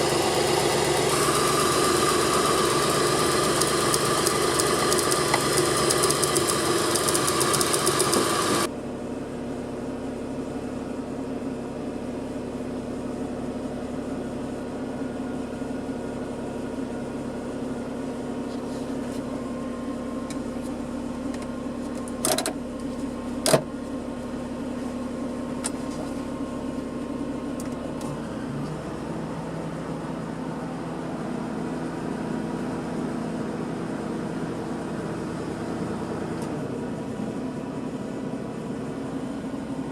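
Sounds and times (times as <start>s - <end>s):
car engine idling: 0.0s - 31.2s.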